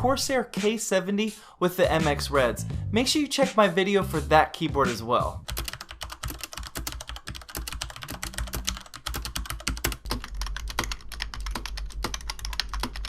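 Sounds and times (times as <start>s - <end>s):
fast keyboard typing: 5.5s - 13.0s.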